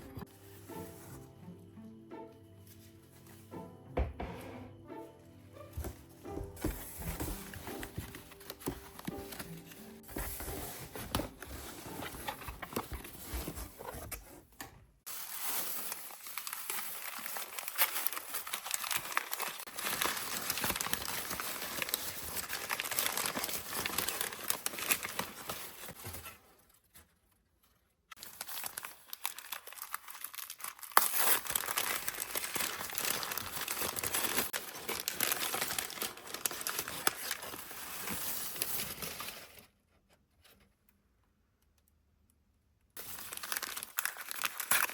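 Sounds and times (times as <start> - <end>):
packing material crinkling: 6.6 - 14.4, 15.1 - 27.0, 28.1 - 39.6, 43.0 - 44.9.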